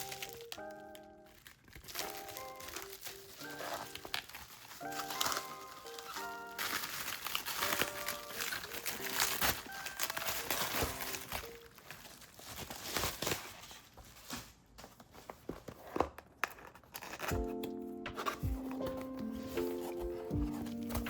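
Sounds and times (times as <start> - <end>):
packaging crinkling and rustling: 0.0 - 21.0.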